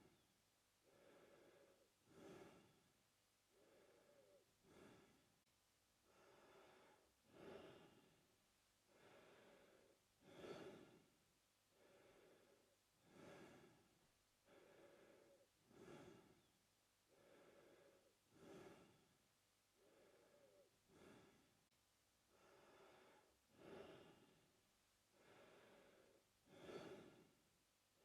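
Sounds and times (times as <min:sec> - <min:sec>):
man breathing through mouth: 0:00.9 - 0:02.8, 0:03.5 - 0:05.2, 0:08.9 - 0:11.1, 0:14.5 - 0:16.4, 0:17.1 - 0:19.1, 0:19.8 - 0:21.5, 0:25.1 - 0:27.4.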